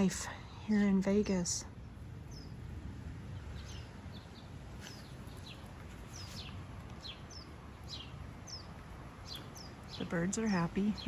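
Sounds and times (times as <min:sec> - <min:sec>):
small songbirds chirping: 0:00.0 - 0:11.0.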